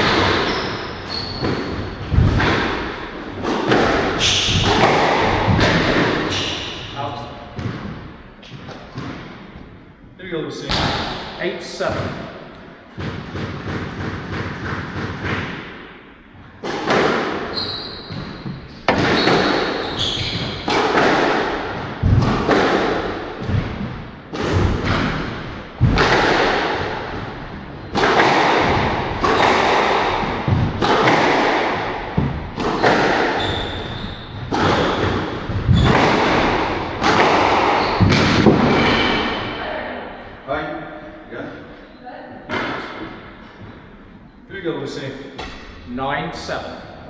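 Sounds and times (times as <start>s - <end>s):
squash ball hits: 0.0s - 9.5s, 10.6s - 39.6s
court shoes squeaking: 0.0s - 9.7s, 16.3s - 39.5s.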